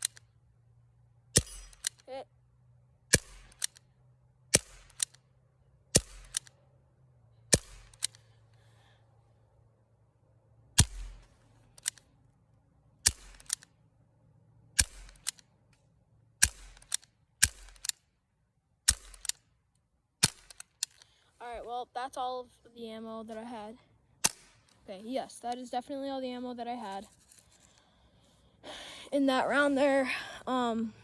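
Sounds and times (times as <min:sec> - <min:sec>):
air pistol shots: 0:00.0 - 0:00.2, 0:01.4 - 0:02.0, 0:03.1 - 0:03.8, 0:04.5 - 0:05.2, 0:05.9 - 0:06.6, 0:07.5 - 0:08.3, 0:10.8 - 0:12.0, 0:13.0 - 0:13.7, 0:14.8 - 0:15.4, 0:16.4 - 0:18.0, 0:18.8 - 0:19.4, 0:20.2 - 0:21.0, 0:24.2 - 0:24.8.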